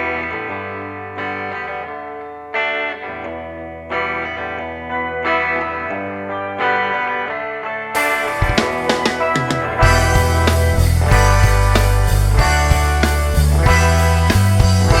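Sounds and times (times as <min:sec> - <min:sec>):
electric guitar chords with chorus: 0:00.0 - 0:15.0.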